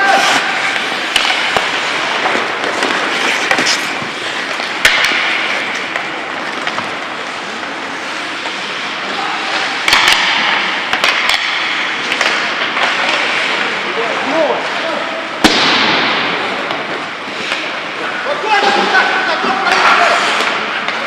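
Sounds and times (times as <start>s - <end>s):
skate blades hissing on ice: 0.0s - 6.3s
hockey sticks and puck clacking: 0.0s - 21.0s.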